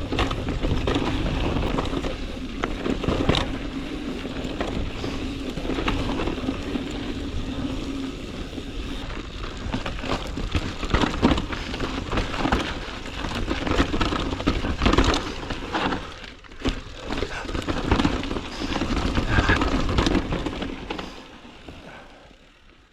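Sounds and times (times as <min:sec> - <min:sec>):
bike knocking and rattling: 0:00.0 - 0:22.7
bike tyres crunching over dirt: 0:00.0 - 0:22.9.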